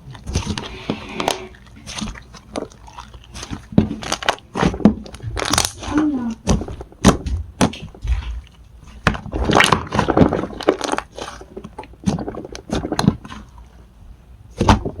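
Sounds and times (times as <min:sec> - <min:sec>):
slime crackling and popping: 0:01.6 - 0:08.3, 0:09.0 - 0:13.4.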